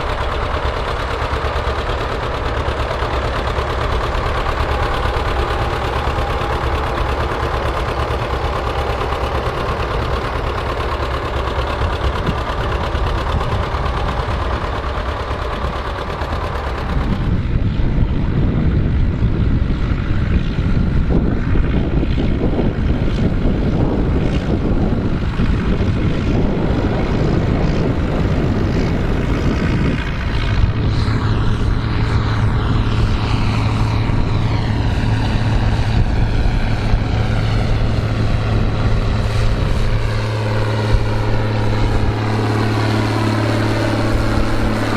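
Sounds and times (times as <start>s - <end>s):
steady low hum: 0.0s - 44.9s
tractor engines running: 0.0s - 44.9s.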